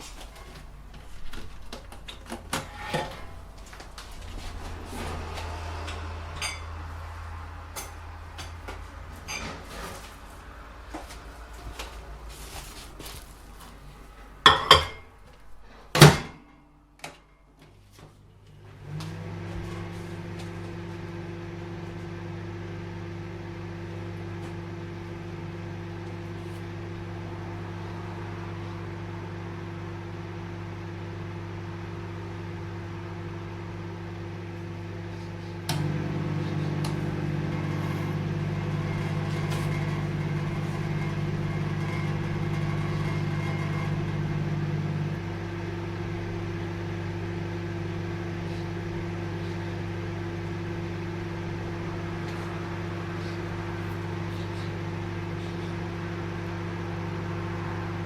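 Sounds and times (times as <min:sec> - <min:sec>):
microwave oven humming: 0:00.0 - 0:58.0
microwave oven clicks: 0:15.9 - 0:16.4, 0:35.7 - 0:45.2.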